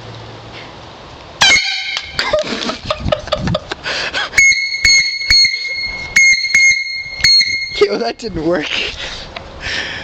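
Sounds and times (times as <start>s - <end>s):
air horn blast: 1.4s - 2.2s
air horn sputtering: 1.4s - 2.2s, 4.4s - 7.9s
thin high whistle: 4.4s - 7.9s.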